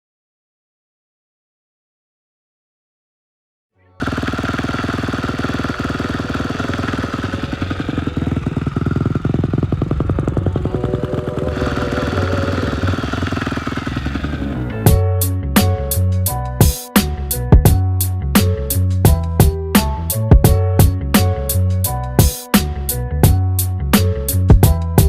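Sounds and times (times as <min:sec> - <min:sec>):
engine running: 0:04.0 - 0:15.8.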